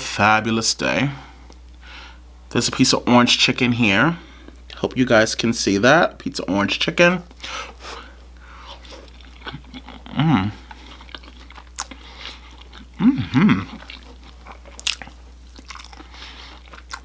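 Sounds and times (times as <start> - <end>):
person chewing crunchy food: 7.3 - 17.0
person humming: 10.0 - 10.6, 13.0 - 13.8.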